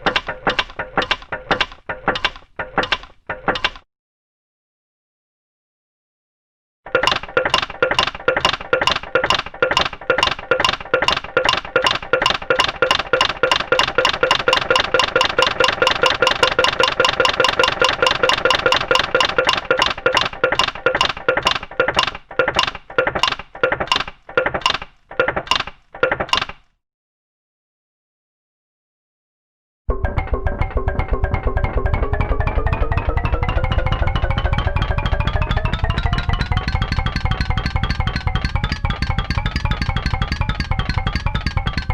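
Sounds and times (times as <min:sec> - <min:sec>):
ringing clicks: 0:06.9 - 0:24.8.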